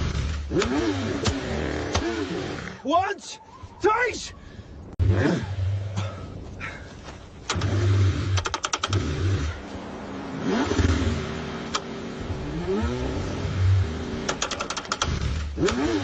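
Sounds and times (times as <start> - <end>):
car engine cranking: 0.0 - 2.8, 7.4 - 16.0
rapid clicks: 7.4 - 9.0, 14.2 - 15.9.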